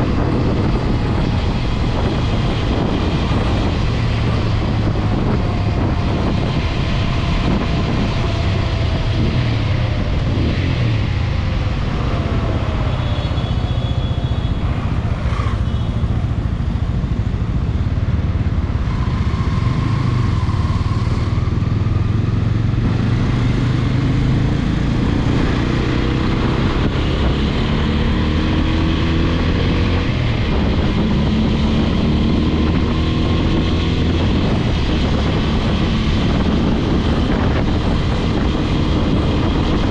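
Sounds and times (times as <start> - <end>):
motorcycle engine running: 0.0 - 27.8
wind rush over microphone: 0.0 - 39.9.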